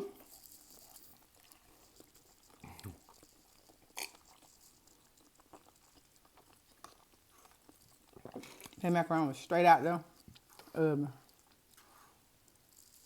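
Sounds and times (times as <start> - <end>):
mouth smacks: 0.0 - 7.0
person chewing: 0.1 - 8.8, 10.1 - 13.0.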